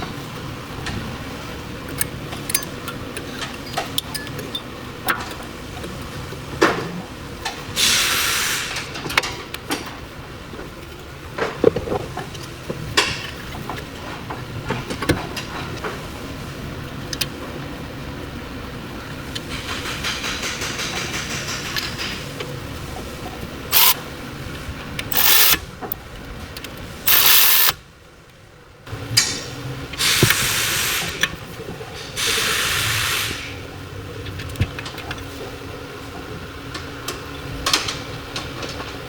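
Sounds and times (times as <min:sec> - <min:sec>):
metal tools clicking and knocking: 0:01.9 - 0:06.0, 0:23.7 - 0:24.0, 0:25.0 - 0:26.0, 0:26.6 - 0:27.8.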